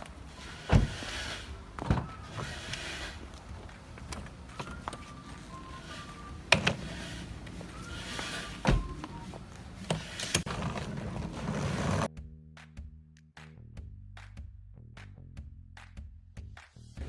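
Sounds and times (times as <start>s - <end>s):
music: 1.3s - 9.6s, 12.1s - 17.0s.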